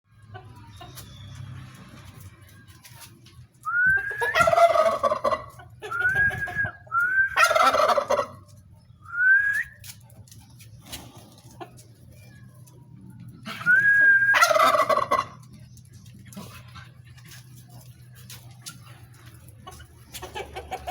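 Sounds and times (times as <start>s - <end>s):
turkey whistled calls: 3.6s - 8.4s, 9.0s - 10.0s, 13.5s - 15.4s
turkey gobble: 3.7s - 9.2s, 13.4s - 15.7s, 19.6s - 20.9s.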